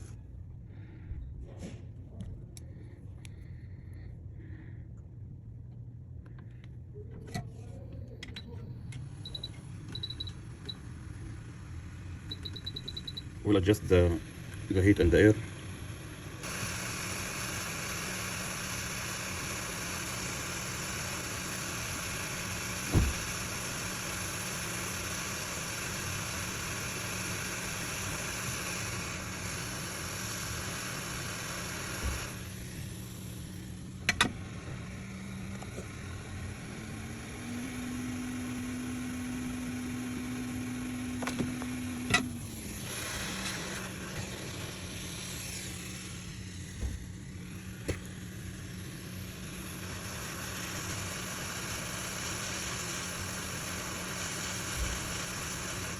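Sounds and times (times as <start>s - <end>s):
low hum: 0.0s - 17.2s
hot-air station hissing: 9.0s - 55.9s.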